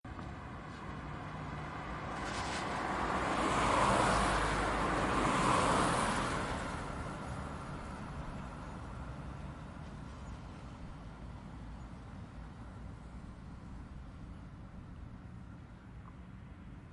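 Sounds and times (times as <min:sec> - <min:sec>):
car passing by: 0:00.3 - 0:10.7.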